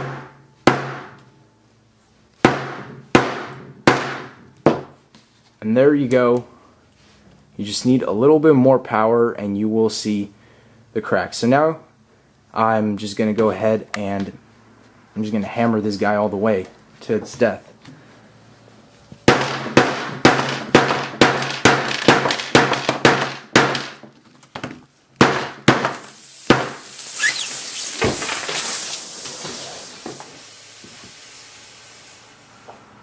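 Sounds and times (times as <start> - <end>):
hammer hitting smartphone: 0.0 - 1.2, 2.4 - 4.9, 25.2 - 26.7
battery venting with hiss: 26.0 - 33.0.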